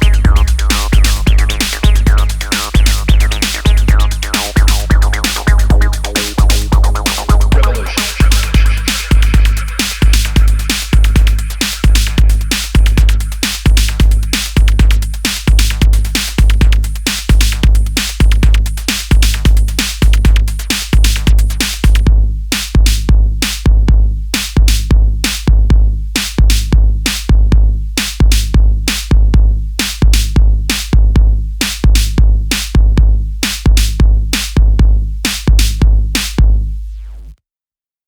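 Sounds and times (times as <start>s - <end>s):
bright hi-hat: 0.0s - 23.7s
drum machine kick with bass: 0.0s - 37.4s.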